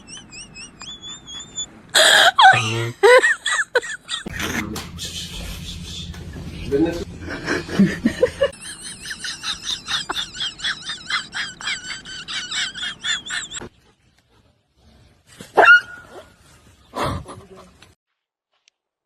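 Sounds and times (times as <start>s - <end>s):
high-pitched animal chirping: 0.0s - 1.7s.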